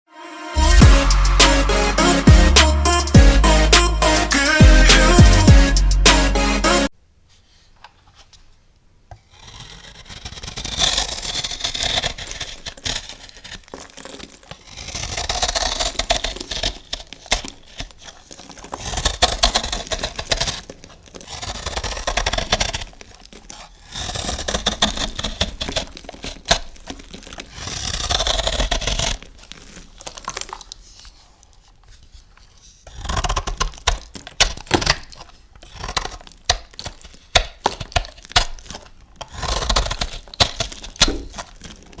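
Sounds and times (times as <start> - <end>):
blade rasping through soap: 9.2 - 42.0
crisp crackles and snaps: 10.0 - 42.0.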